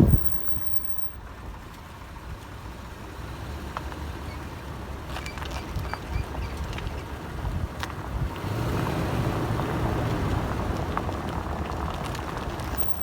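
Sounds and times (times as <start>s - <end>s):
short high squeaks: 0.0s - 1.2s, 12.8s - 13.0s
vehicle driving rumble: 0.0s - 13.0s.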